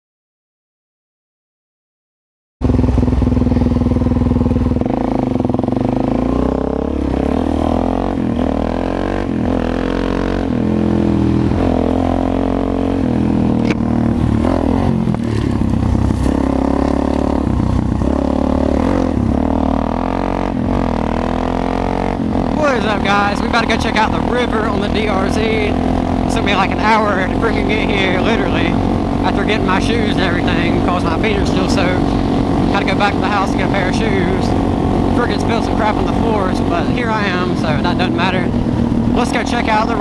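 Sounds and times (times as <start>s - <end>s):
motorcycle engine revving: 2.6s - 40.0s.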